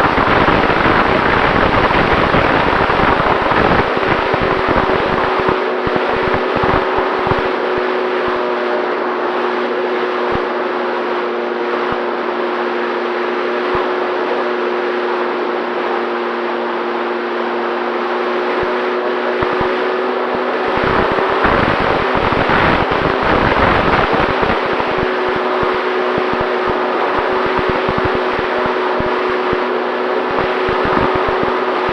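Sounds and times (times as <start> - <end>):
low wind buffeting: 0.0 - 9.2, 18.3 - 31.9
wind rushing over microphone: 0.0 - 12.3, 18.0 - 31.9
electric motor and propeller: 0.0 - 31.9.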